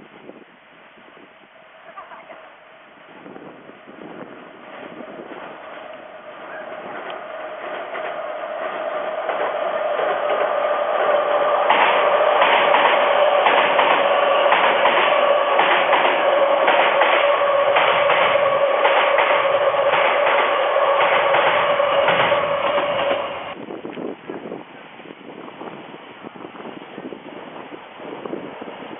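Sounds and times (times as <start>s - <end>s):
electric train passing: 0.3s - 23.7s
wheels clattering over rail joints: 4.8s - 23.6s.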